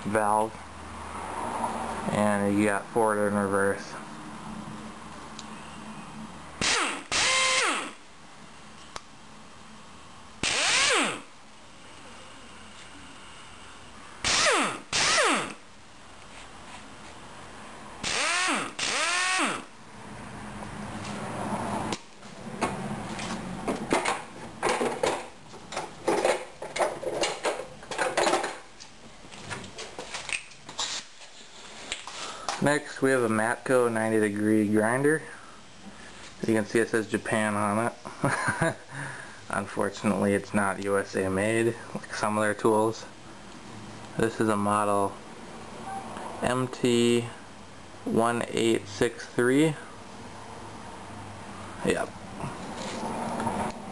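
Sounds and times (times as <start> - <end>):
air impact wrench spinning: 6.6 - 8.0, 10.4 - 11.3, 14.2 - 15.6, 18.0 - 19.7.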